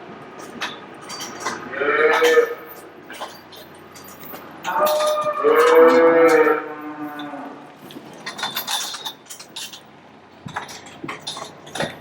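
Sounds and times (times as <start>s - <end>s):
light metallic clinks and rattles: 0.4s - 12.0s
cow mooing: 1.7s - 2.7s, 4.7s - 7.7s.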